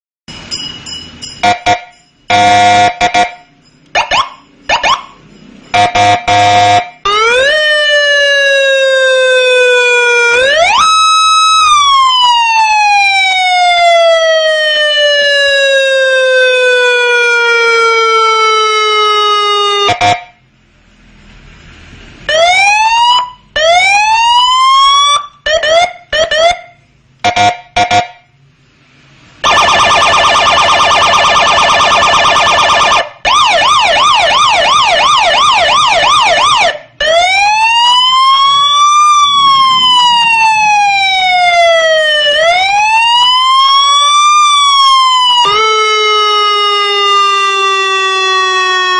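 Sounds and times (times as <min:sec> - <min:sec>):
electronic police siren: 0:01.4 - 0:20.4, 0:22.3 - 0:28.2, 0:29.4 - 0:48.9.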